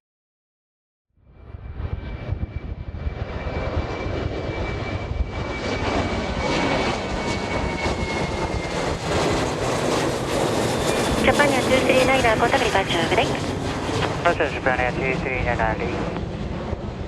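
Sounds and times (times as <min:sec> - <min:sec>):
jet engines roaring: 0:01.5 - 0:17.0.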